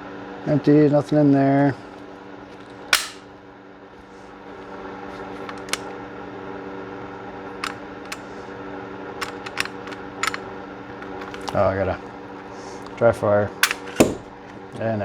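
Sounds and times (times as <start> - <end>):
fan-like hum: 0.0 - 15.0
metallic clicks of handgun parts: 3.0 - 3.3, 5.4 - 5.9, 7.6 - 8.4, 9.2 - 10.4, 11.0 - 11.6, 13.6 - 14.2.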